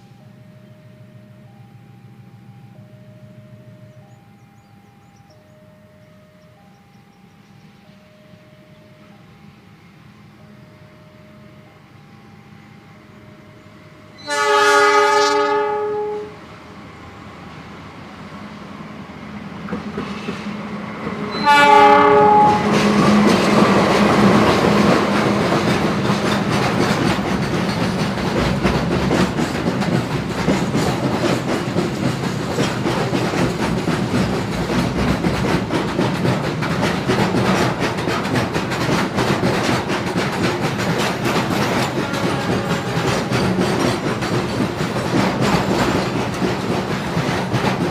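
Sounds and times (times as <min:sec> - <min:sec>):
train wheels rumbling: 0:00.0 - 0:47.9
train horn blast: 0:14.1 - 0:16.6, 0:21.2 - 0:23.3, 0:41.9 - 0:43.4
clicking over rail joints: 0:22.2 - 0:47.9.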